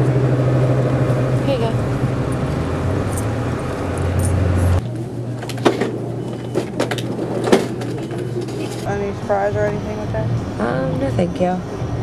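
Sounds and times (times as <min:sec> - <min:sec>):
car idling: 0:00.0 - 0:08.9
clicks and knocks: 0:04.8 - 0:08.9.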